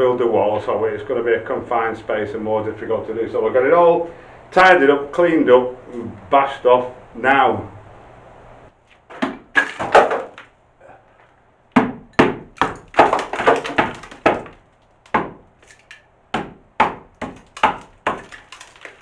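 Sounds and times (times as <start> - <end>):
hammer knocking plaster off wall: 9.1 - 10.5, 11.8 - 19.0.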